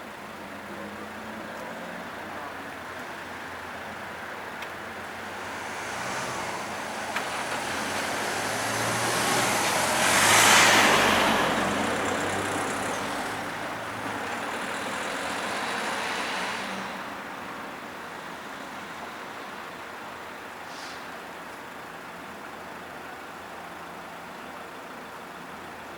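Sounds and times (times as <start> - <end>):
vehicle passing close by: 5.1 - 17.1.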